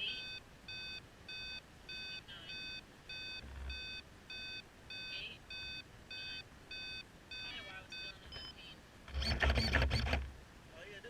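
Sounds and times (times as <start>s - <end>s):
electronic alarm beeping: 0.0s - 8.8s.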